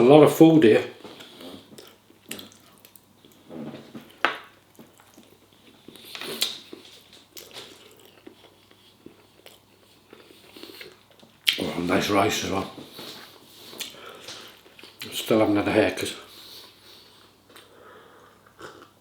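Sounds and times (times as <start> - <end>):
wet chewing sounds: 1.0 - 11.6, 12.9 - 15.1.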